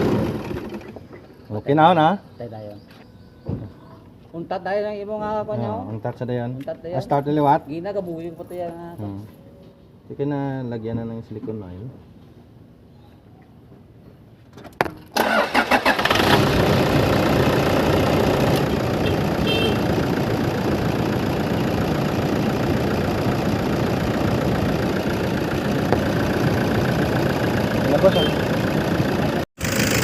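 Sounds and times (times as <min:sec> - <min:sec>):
engine cranking: 0:15.2 - 0:19.1
engine idling: 0:15.2 - 0:30.0.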